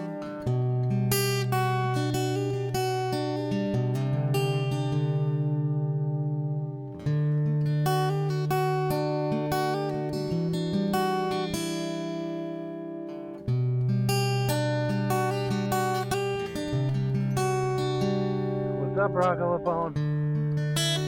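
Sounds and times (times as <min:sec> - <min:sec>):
acoustic guitar picking and strumming: 0:00.0 - 0:21.0
sustained bass notes: 0:18.7 - 0:20.0.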